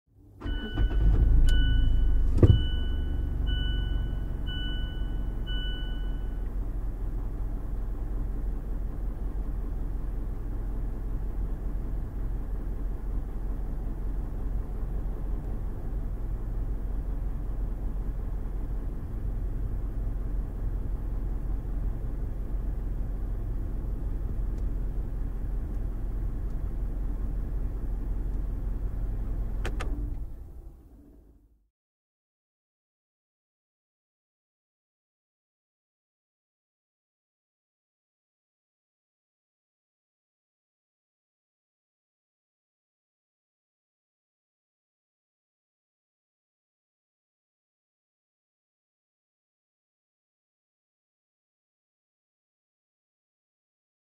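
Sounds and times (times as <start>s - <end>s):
car engine idling: 0.2s - 31.4s
two-tone dashboard chime: 0.4s - 6.5s
sharp click: 29.6s - 30.0s.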